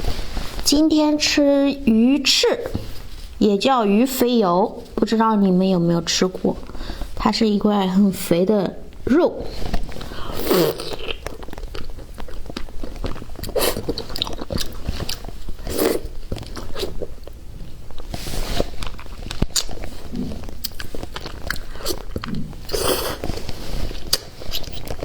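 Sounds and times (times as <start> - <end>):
biting and chewing meat: 9.8 - 25.0.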